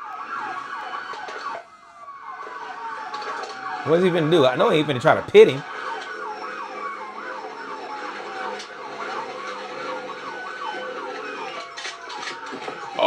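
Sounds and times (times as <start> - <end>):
police siren wail: 0.0 - 13.0
police siren yelp: 0.0 - 13.0
road and engine noise: 3.0 - 13.0.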